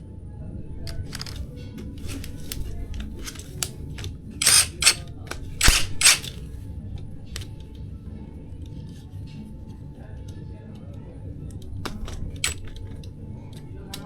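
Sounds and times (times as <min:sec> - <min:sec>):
sharp clicks and snaps: 0:04.4 - 0:06.4.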